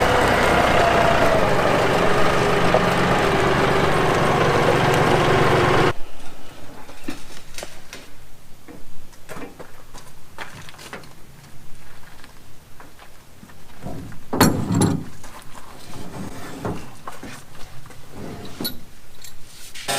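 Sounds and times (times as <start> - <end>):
tractor engine running: 0.0 - 6.0.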